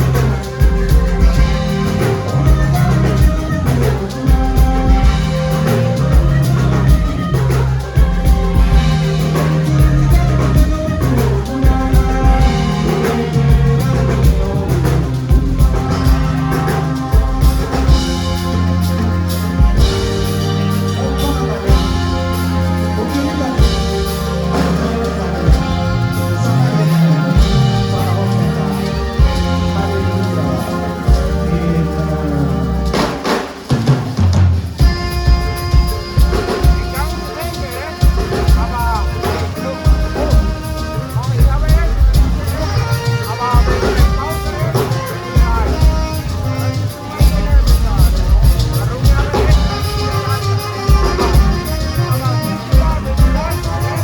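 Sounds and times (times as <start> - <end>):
drum kit beat: 0.0 - 54.0
live band playing instrumental: 0.0 - 54.0
pulsing bass line: 0.0 - 54.0.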